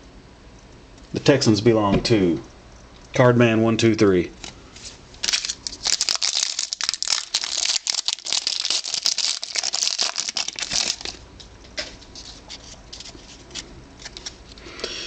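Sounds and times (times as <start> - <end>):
cards rustling and clicking: 4.4 - 11.2, 11.8 - 14.6
card pack wrapper crinkling and tearing: 5.2 - 11.2.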